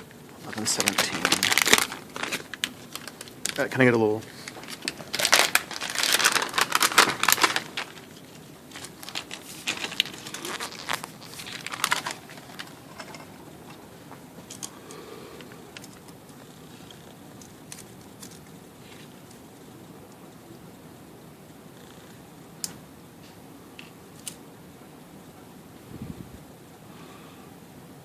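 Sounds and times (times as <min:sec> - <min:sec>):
plastic packaging crinkling: 0:00.0 - 0:13.8, 0:15.4 - 0:19.4.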